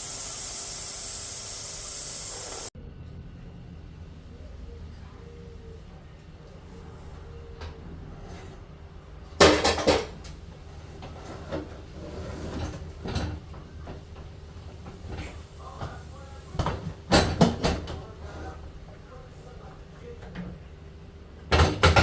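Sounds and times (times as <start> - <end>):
dishes and utensils clattering: 9.4 - 10.2.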